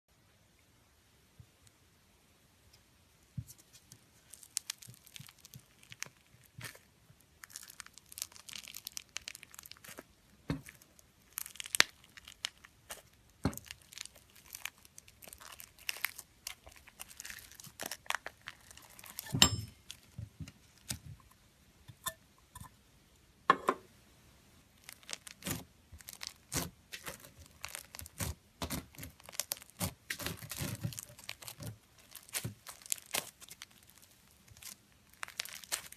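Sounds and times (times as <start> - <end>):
slime crackling and popping: 4.2 - 21.1, 24.8 - 35.9.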